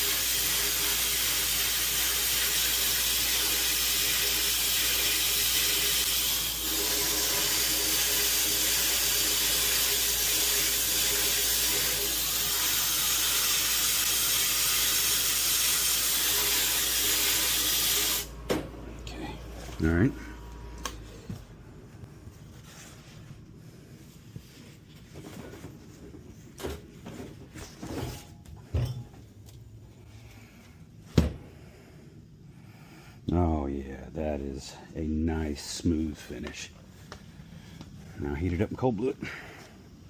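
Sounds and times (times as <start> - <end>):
compressed air blasting hiss: 0.0 - 18.3.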